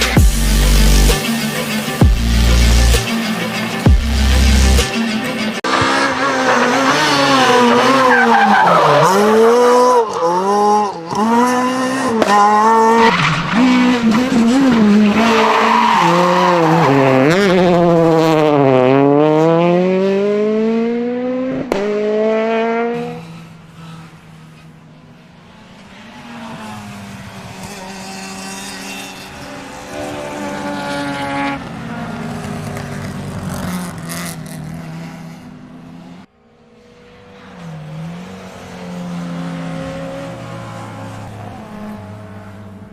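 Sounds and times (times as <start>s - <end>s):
race car engine revving: 0.0s - 24.1s.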